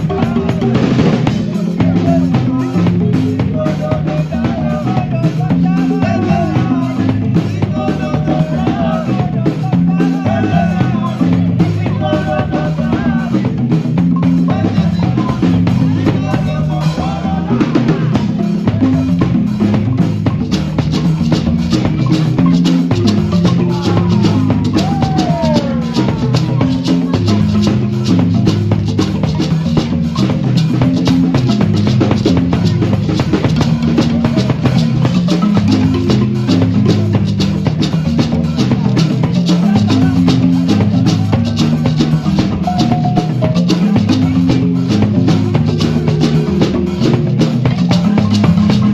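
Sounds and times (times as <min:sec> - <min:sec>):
drums beating: 0:00.0 - 0:48.9
marimba ensemble playing: 0:00.0 - 0:48.9
shaker rattling: 0:18.3 - 0:48.9.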